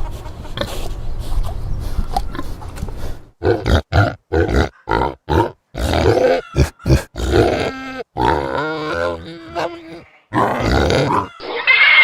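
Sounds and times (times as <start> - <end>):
pigs grunting: 3.4 - 11.6
pig squealing: 5.8 - 12.0.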